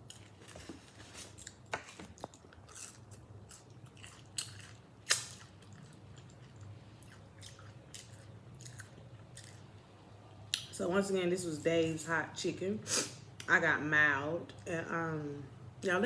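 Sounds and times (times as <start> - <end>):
person chewing food: 0.0 - 9.8.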